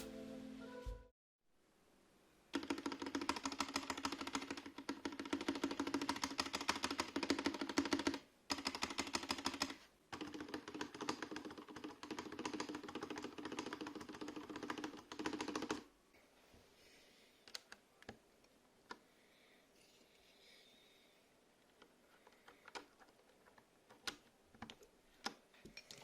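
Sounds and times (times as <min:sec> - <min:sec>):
mechanical keyboard typing: 0:02.5 - 0:15.8.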